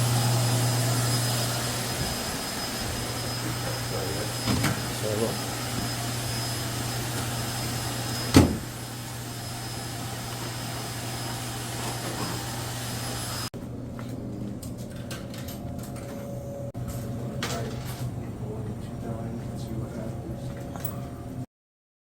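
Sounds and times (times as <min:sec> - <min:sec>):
machine hum with hiss: 0:00.0 - 0:13.5.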